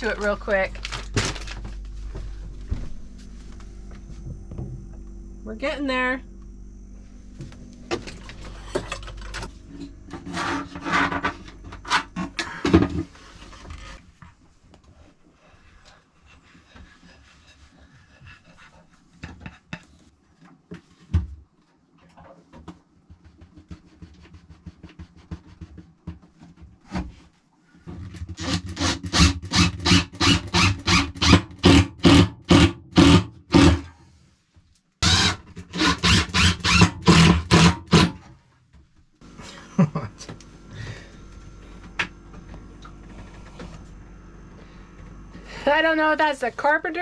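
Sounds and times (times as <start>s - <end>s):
hand saw cutting wood: 10.1s - 12.6s, 28.3s - 34.0s, 35.0s - 38.3s.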